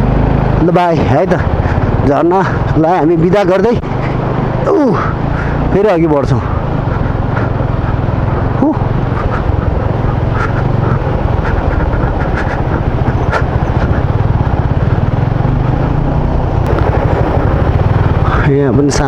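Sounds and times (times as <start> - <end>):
motorcycle engine running: 0.0 - 19.0.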